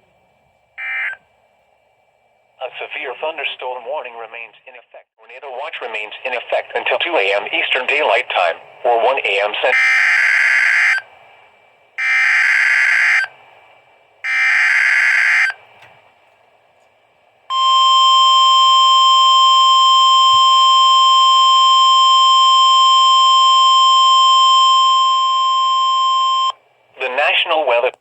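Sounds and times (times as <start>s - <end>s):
steady warning alarm tone: 0.8s - 1.2s, 9.7s - 11.1s, 12.0s - 13.3s, 14.2s - 15.6s, 17.5s - 26.6s.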